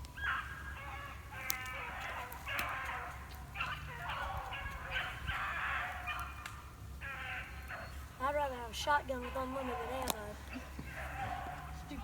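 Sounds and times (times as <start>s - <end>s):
dogs baying: 0.1s - 12.0s.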